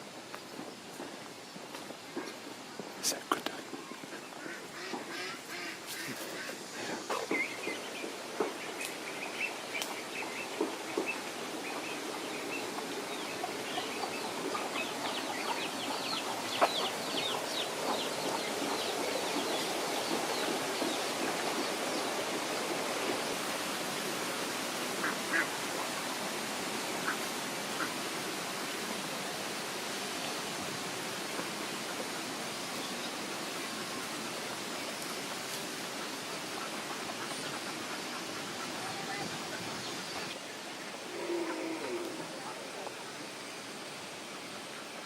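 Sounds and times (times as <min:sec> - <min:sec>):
ducks calling: 0:03.8 - 0:23.6, 0:24.5 - 0:26.0.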